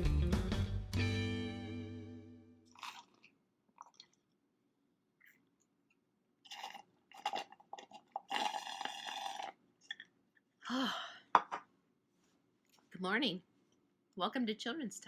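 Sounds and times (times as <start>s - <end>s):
person slurping water: 2.7s - 4.2s, 6.4s - 10.1s
person sighing: 10.6s - 11.3s.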